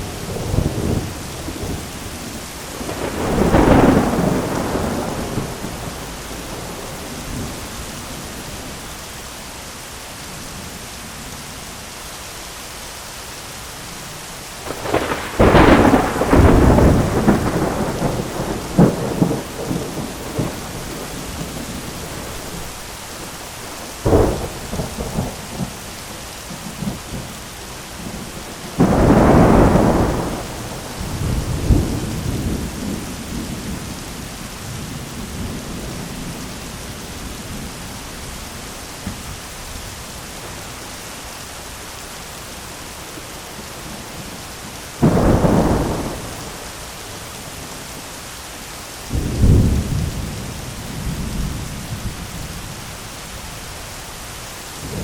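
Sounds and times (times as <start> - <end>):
heavy rain on an umbrella: 0.0 - 55.0
thunder: 2.8 - 7.6, 14.6 - 22.6, 28.0 - 33.9, 45.0 - 46.7, 49.1 - 52.6.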